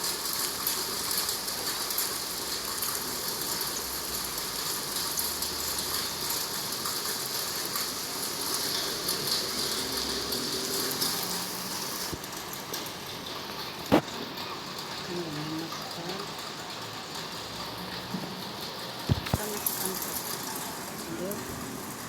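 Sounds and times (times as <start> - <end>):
raindrops crackling: 0.0 - 22.0
wind: 0.0 - 22.0.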